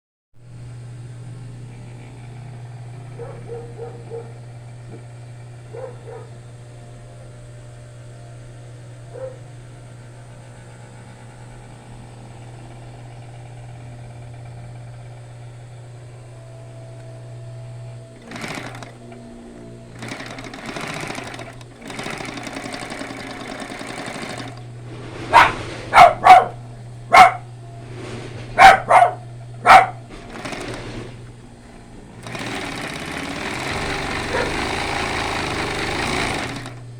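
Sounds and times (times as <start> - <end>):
sewing machine motor humming: 0.5 - 36.9
dog barking: 3.2 - 5.0, 5.7 - 6.4, 9.1 - 9.5, 25.3 - 27.5, 28.6 - 30.1, 34.2 - 34.6
sewing machine running: 10.9 - 36.9.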